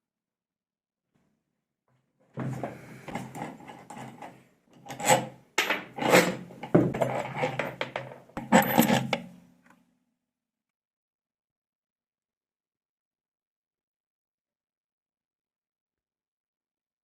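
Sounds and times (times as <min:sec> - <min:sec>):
metal scraping and rubbing: 0:02.4 - 0:09.4.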